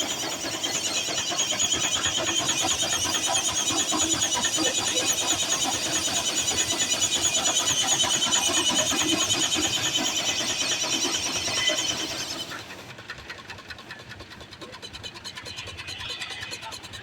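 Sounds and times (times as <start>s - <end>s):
saw whining: 0.0s - 12.8s
sawmill clatter: 0.0s - 17.0s.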